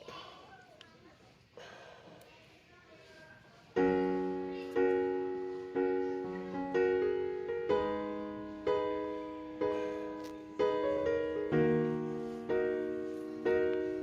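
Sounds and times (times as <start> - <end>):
keyboard chords: 3.8 - 14.0.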